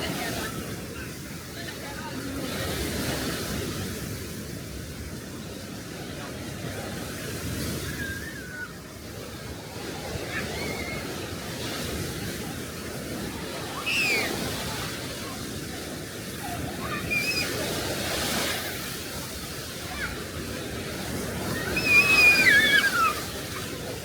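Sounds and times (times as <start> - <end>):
sea waves washing onto beach: 0.0 - 24.0
high falling cry: 21.6 - 23.2.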